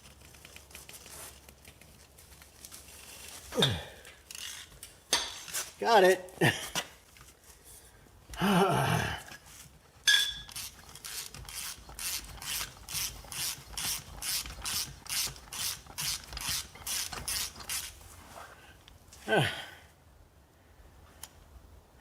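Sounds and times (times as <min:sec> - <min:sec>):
ratchet wrench clicking: 0:10.1 - 0:18.0.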